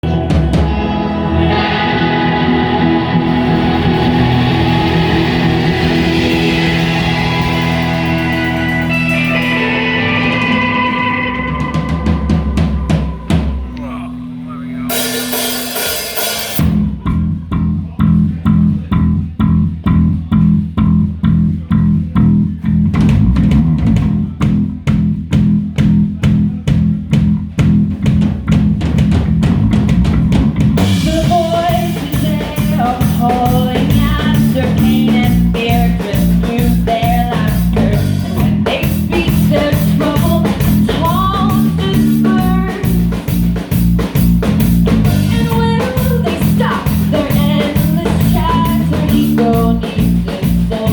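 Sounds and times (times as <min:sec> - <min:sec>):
guitar melody: 0:00.0 - 0:17.7
band music with drums and bass: 0:00.0 - 0:50.9.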